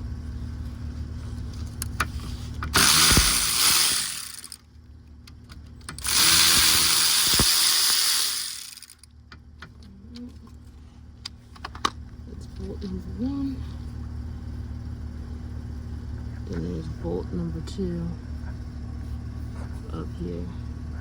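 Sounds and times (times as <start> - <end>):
cordless power tool running: 2.7 - 4.6, 5.9 - 9.1.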